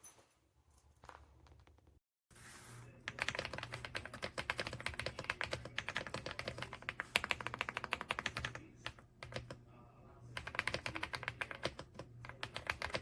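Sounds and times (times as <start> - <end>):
fast typing on mechanical keyboard: 3.1 - 9.6, 10.4 - 13.0.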